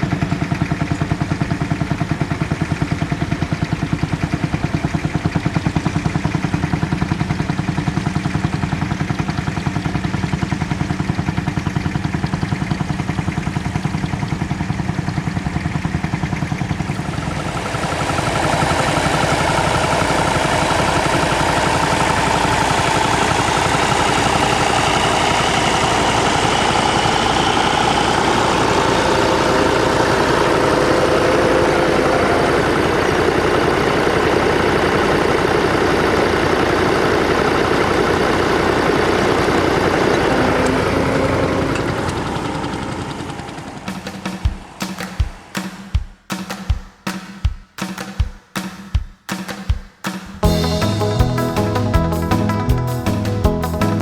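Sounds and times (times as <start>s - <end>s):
tractor engine running: 0.0s - 45.6s, 50.4s - 54.0s
high wavering tone: 17.0s - 34.5s.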